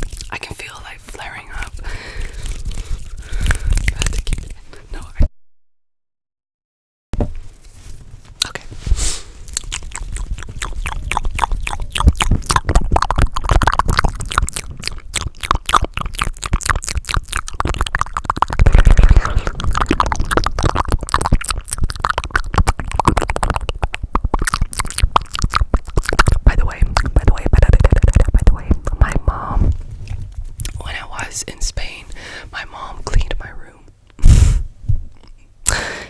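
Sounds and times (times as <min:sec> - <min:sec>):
mouth clicks and pops: 0:01.5 - 0:05.3, 0:09.5 - 0:30.9, 0:35.1 - 0:35.9.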